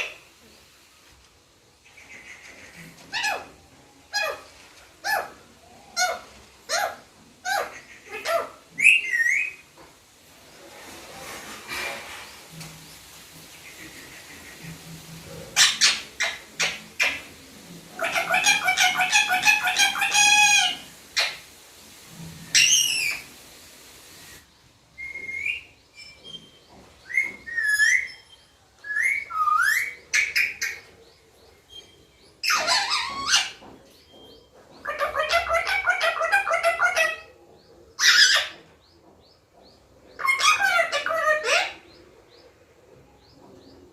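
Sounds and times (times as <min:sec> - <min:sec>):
parakeet chattering: 0:18.0 - 0:21.4
parakeet screeching: 0:18.0 - 0:21.4, 0:32.4 - 0:33.6, 0:34.8 - 0:37.3, 0:38.0 - 0:38.6, 0:40.2 - 0:41.8.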